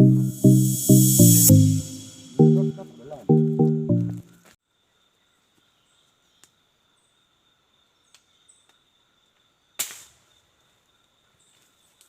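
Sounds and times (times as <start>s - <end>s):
faint high-pitched tone: 0.0s - 4.3s.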